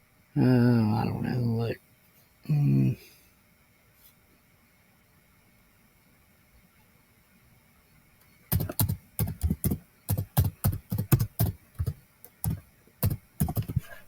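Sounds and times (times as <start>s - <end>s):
typing on computer keyboard: 8.5s - 14.0s.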